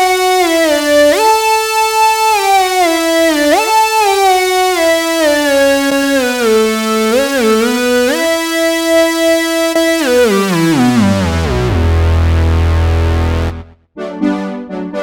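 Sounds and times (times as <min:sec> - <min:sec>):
keyboard synth chords: 0:00.0 - 0:15.0
synth lead gliding between notes: 0:00.0 - 0:15.0.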